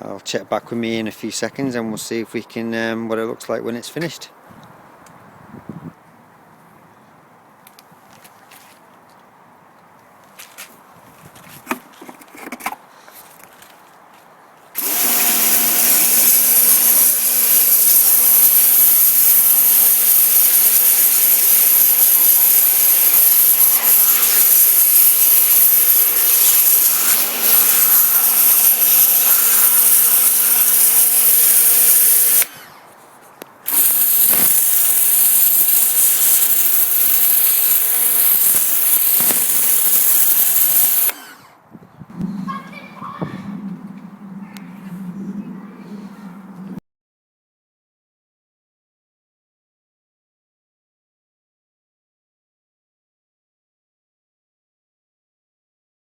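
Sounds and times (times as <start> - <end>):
pressure washer motor hum: 14.8 - 32.6, 33.7 - 41.4.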